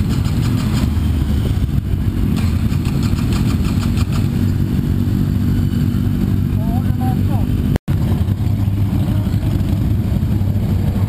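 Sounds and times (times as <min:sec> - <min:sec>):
motorcycle engine rumbling: 0:00.0 - 0:11.0
rapid even engine pulses: 0:00.0 - 0:11.0.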